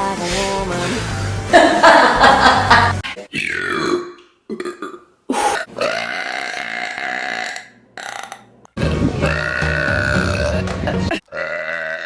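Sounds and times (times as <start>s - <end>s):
woman belching: 5.6s - 8.5s, 9.2s - 12.0s.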